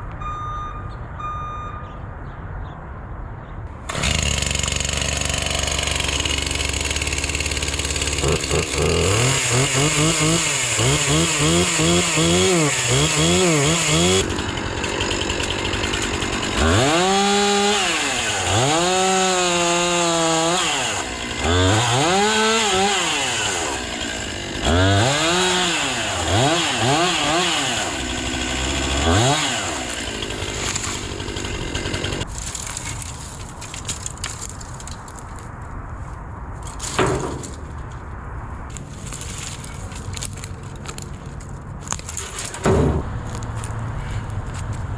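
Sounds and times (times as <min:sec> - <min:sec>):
chainsaw revving and cutting wood: 0:03.9 - 0:32.4.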